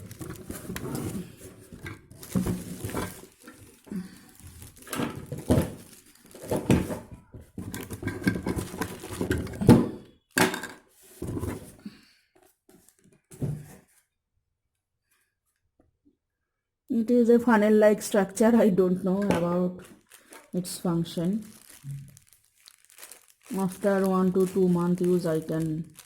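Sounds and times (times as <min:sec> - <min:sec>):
plastic parts knocking and clattering: 0:00.0 - 0:11.7.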